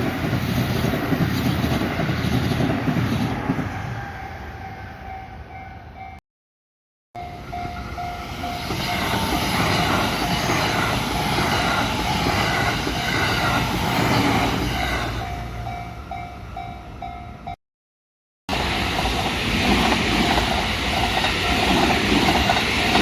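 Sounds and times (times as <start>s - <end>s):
train passing: 0.0s - 6.2s, 7.2s - 17.6s, 18.5s - 23.0s
crossing warning bell: 3.9s - 6.2s, 7.2s - 13.6s, 14.4s - 17.6s.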